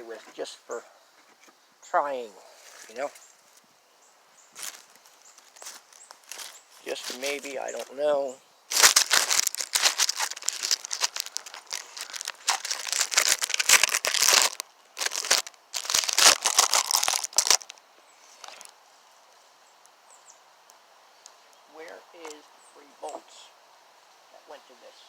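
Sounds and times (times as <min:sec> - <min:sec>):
crinkling and crackling: 0:02.6 - 0:03.7, 0:04.6 - 0:08.1, 0:08.7 - 0:17.8, 0:18.4 - 0:18.8.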